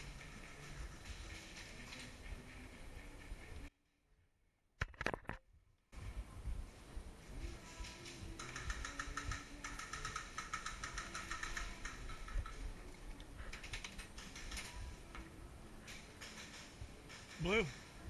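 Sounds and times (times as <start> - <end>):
airsoft gun firing rapid clicks: 8.4 - 12.6.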